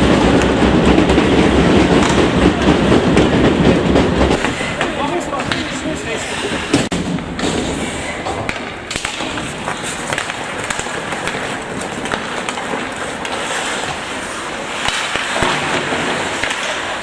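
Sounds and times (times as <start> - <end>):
sticks and puck clicking on ice: 1.0 - 17.0
hiss of skates on ice: 11.3 - 15.4.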